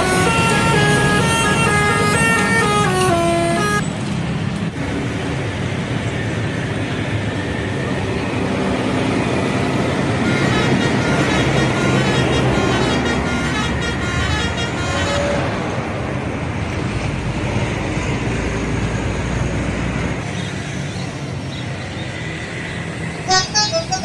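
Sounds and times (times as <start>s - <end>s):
bus horn melody: 0.0s - 3.8s, 10.0s - 15.7s, 23.2s - 24.0s
road traffic noise: 0.0s - 24.0s.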